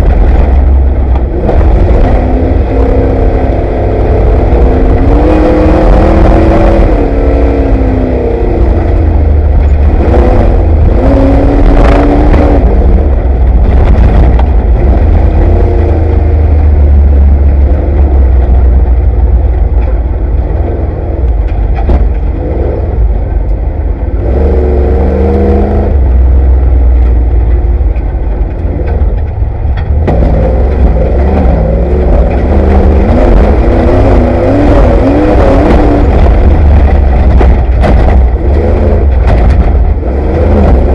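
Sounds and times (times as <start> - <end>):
race vehicle engine revving: 0.0 - 40.9
sharp knocks and rattles: 21.3 - 22.4, 35.6 - 40.9.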